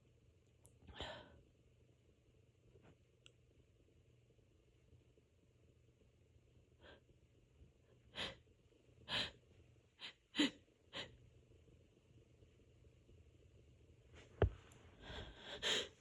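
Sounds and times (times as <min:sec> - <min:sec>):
faint breath: 0:14.9 - 0:16.0.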